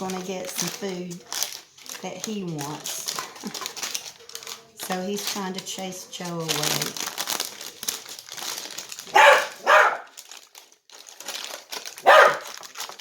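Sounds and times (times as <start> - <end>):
dog barking: 9.1 - 10.1, 12.0 - 12.5.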